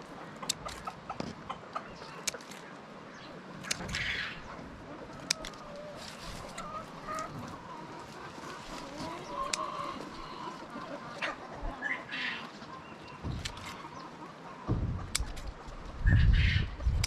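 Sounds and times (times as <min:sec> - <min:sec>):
chickens clucking: 0:00.0 - 0:17.0
sharp clicks: 0:15.0 - 0:15.5.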